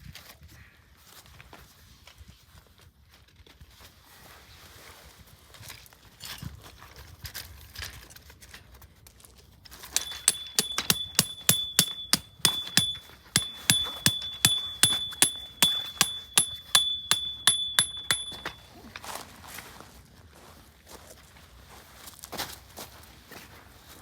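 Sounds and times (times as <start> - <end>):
hammer striking metal tent peg: 10.0 - 18.7
peg ringing: 10.0 - 18.8.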